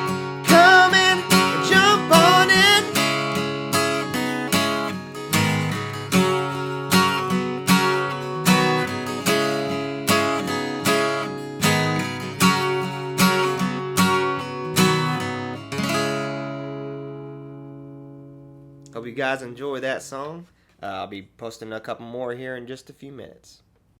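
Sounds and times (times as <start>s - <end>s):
acoustic guitar strummed: 0.0s - 19.0s.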